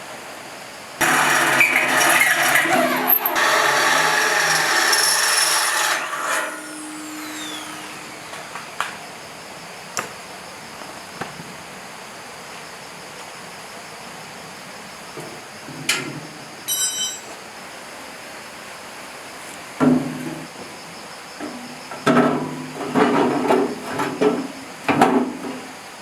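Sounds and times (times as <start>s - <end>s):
power tool whining: 1.0s - 8.8s.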